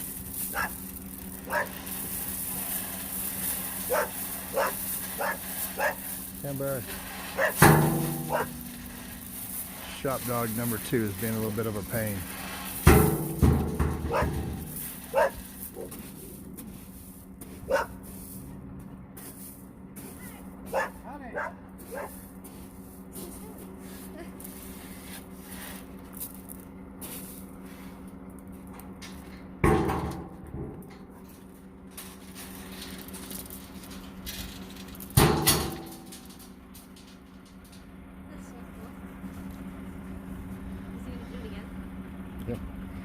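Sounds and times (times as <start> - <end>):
steady low hum: 0.0 - 43.0
dog barking: 0.5 - 0.8, 1.5 - 1.8, 3.9 - 6.0, 7.4 - 7.6, 8.3 - 8.6, 14.1 - 14.4, 15.1 - 15.9, 17.7 - 18.0, 20.7 - 22.1.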